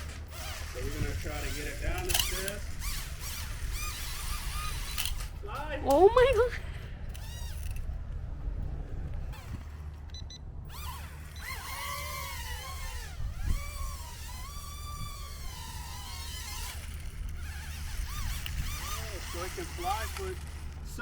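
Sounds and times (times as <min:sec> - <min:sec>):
toy drone motors whirring: 0:00.0 - 0:08.1, 0:09.2 - 0:21.0
steady low rumble: 0:00.0 - 0:21.0.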